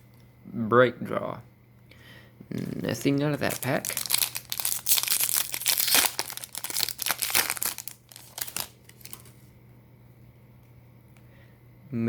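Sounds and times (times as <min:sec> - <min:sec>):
plastic wrapper crinkling and tearing: 0:02.6 - 0:09.4.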